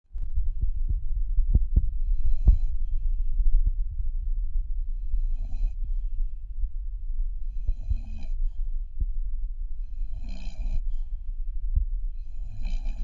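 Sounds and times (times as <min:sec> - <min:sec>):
low rumble: 0:00.1 - 0:13.0
puppy snoring: 0:02.0 - 0:02.9, 0:05.0 - 0:06.3, 0:07.4 - 0:08.9, 0:09.8 - 0:11.3, 0:12.1 - 0:13.0.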